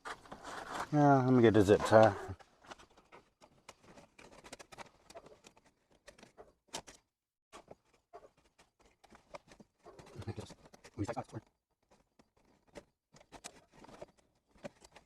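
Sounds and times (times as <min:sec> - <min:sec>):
hands handling wiring: 0:00.0 - 0:15.0.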